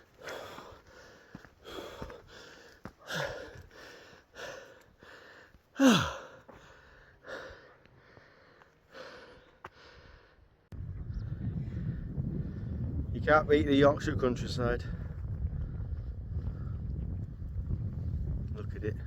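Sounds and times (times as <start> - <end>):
man panting hard: 0.0 - 10.5
man groaning sighs: 5.7 - 7.6.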